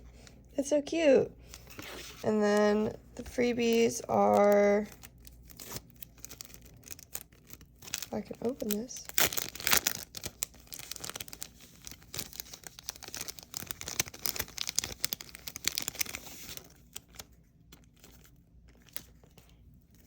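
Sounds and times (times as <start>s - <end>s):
packaging tearing and crinkling: 3.3s - 20.0s.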